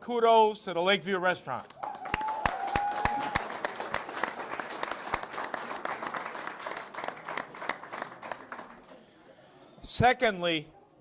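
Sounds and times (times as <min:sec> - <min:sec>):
audience applauding: 0:01.7 - 0:09.0.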